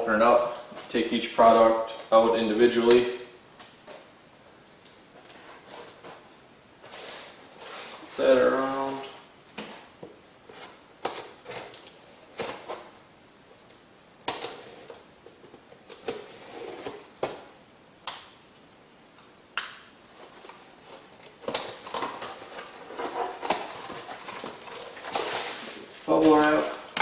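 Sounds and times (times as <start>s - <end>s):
packaging rustling: 20.1s - 27.0s.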